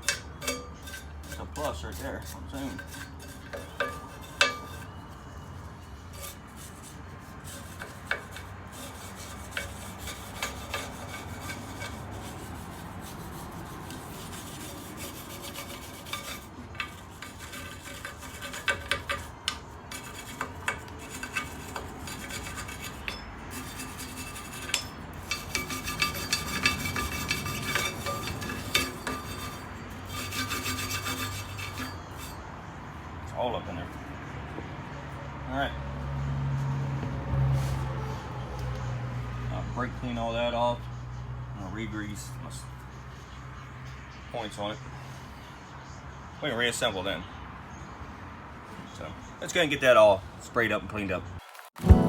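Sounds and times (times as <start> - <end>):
hand scraping brake parts: 0.0 - 32.6.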